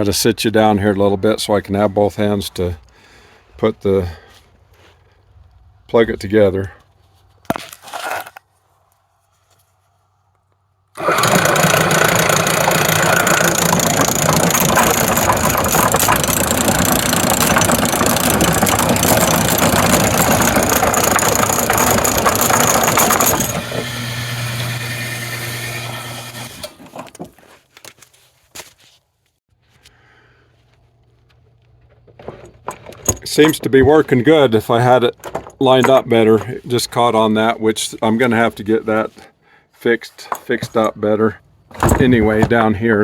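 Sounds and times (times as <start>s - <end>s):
chain conveyor clattering: 11.0s - 24.1s.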